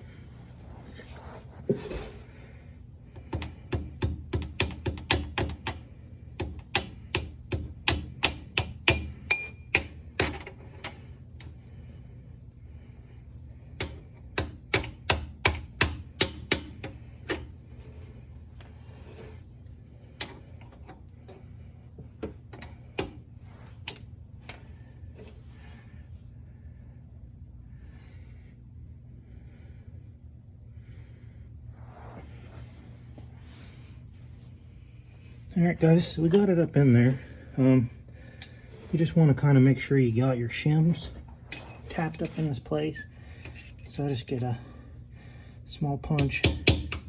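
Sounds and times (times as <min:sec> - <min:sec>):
hammer tapping metal: 0:03.2 - 0:05.8, 0:06.4 - 0:10.5, 0:13.8 - 0:17.4, 0:46.1 - 0:47.0.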